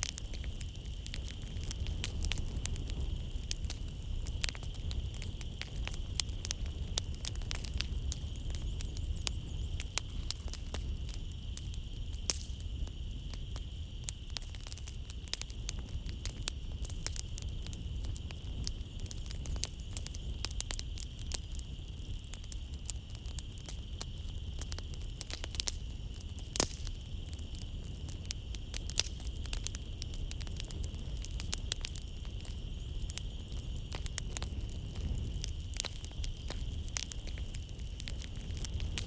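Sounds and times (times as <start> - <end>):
night insects trilling: 0.0 - 39.0
wood fire crackling: 0.0 - 39.0.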